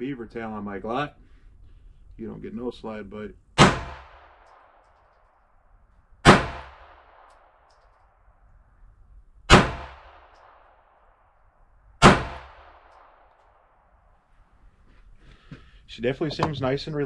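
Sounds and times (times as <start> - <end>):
pistol shots with echo: 3.6 - 4.9, 6.2 - 7.6, 9.5 - 11.1, 12.0 - 13.6.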